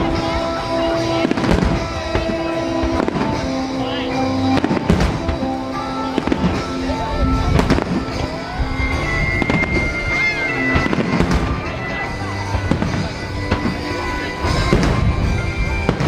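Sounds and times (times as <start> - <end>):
fireworks bangs and booms: 0.0 - 16.0
music playing: 0.0 - 16.0.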